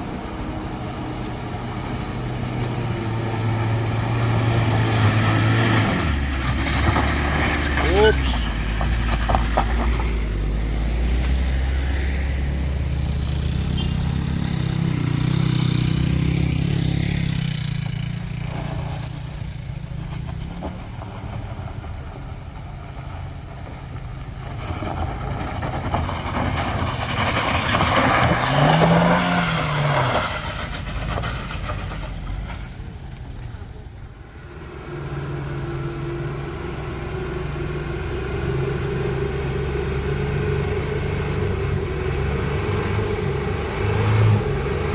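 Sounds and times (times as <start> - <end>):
vehicle passing: 0.0 - 23.6
low diesel engine drone: 28.7 - 44.9.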